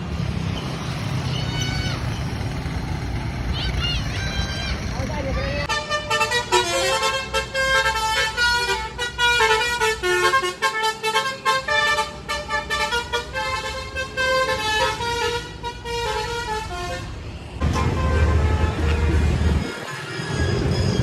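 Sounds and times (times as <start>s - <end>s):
bus horn playing a melody: 5.7s - 20.8s.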